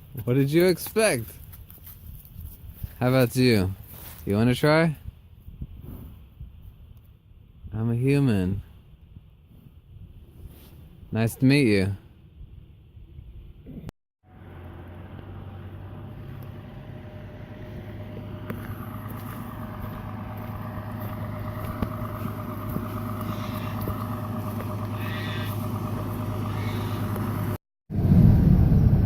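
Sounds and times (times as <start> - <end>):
vehicle engine droning: 14.2 - 29.0.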